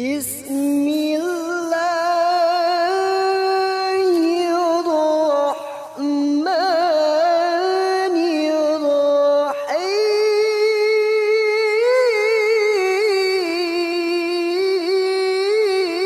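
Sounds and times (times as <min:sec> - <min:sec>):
person singing held notes: 0:00.0 - 0:01.8.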